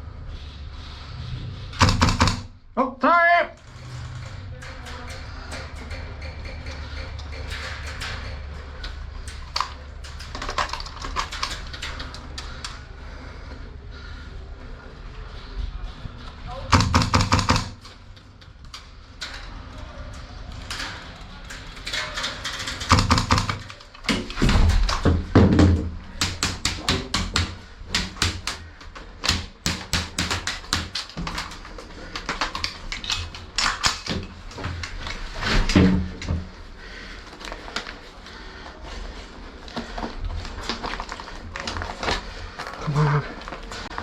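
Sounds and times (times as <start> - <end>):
airsoft guns firing pops: 1.8 - 2.5.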